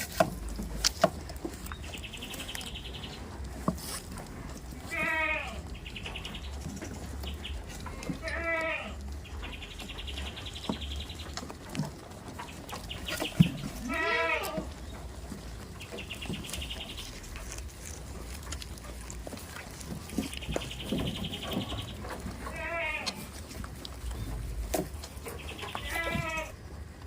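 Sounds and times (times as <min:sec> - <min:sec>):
goats bleating: 0:04.8 - 0:05.7, 0:07.8 - 0:09.1, 0:13.6 - 0:14.8, 0:22.4 - 0:23.4, 0:25.6 - 0:26.6.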